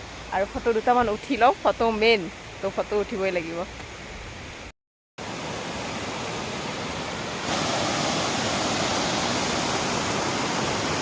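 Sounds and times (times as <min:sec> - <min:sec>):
waterfall roaring: 0:05.2 - 0:11.0.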